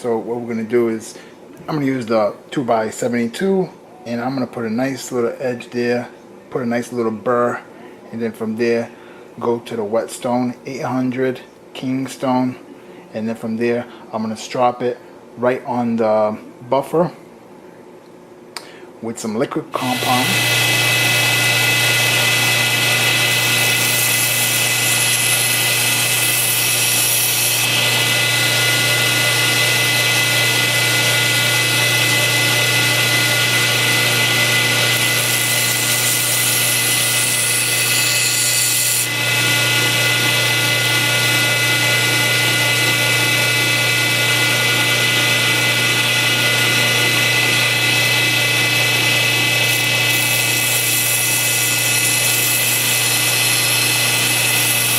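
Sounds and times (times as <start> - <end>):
knife hissing on grinder: 19.8 - 54.9
sharpening machine motor hum: 19.8 - 54.9.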